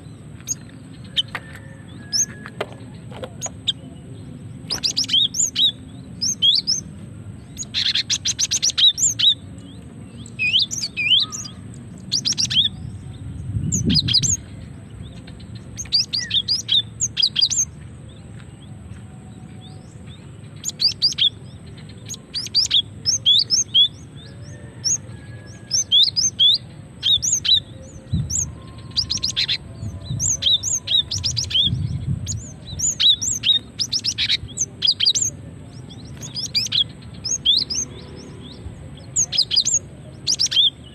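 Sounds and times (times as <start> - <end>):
bird chirps and chattering trills: 4.6 - 12.8, 20.4 - 24.1, 25.7 - 40.9.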